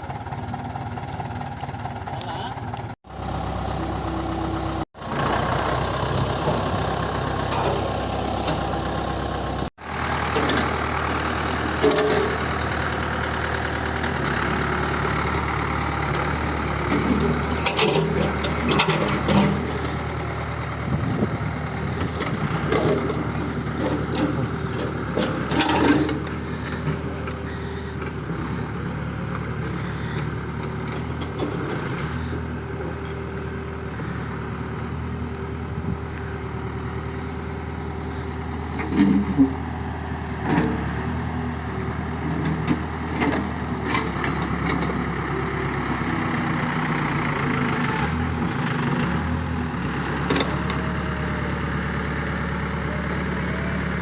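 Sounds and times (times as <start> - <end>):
backhoe engine idling: 0.0 - 54.0
knocks and clanks: 17.0 - 20.0, 22.0 - 27.0.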